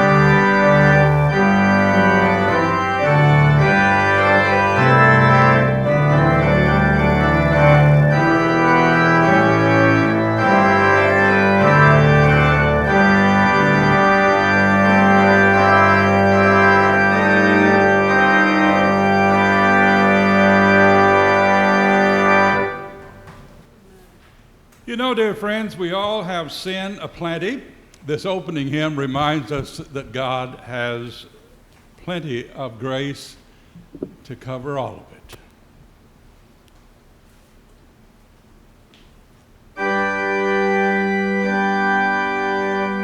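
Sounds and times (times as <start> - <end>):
church organ march: 0.0 - 23.7, 24.8 - 31.3, 39.7 - 43.0.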